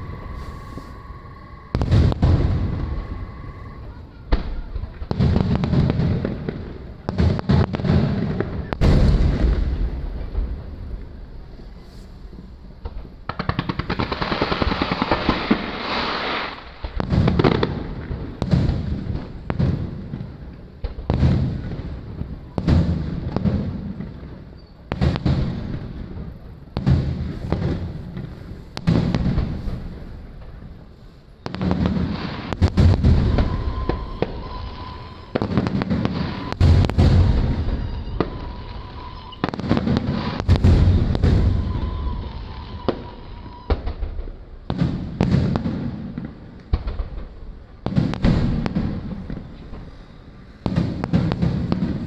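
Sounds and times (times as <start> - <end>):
faint steady tone: 0.0 - 5.0
fireworks booms: 0.0 - 52.0
fireworks crackling: 0.0 - 52.0.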